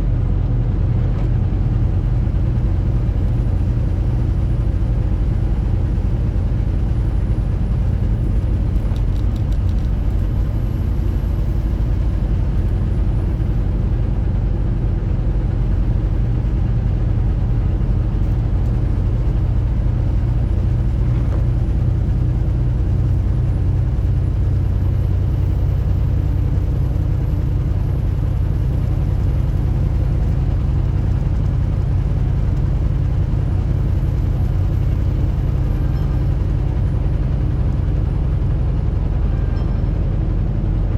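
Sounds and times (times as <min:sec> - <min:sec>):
road noise: 0:00.0 - 0:40.9
truck engine drone: 0:00.0 - 0:40.9.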